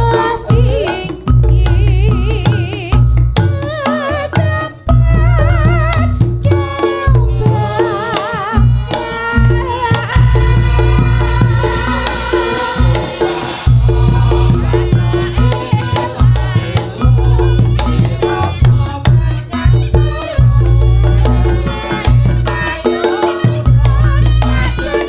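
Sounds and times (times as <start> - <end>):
rapid hand-drum strokes: 0.0 - 25.0
wavering melody: 0.0 - 25.0
heavy boosted bass notes: 10.1 - 22.8, 23.6 - 24.8.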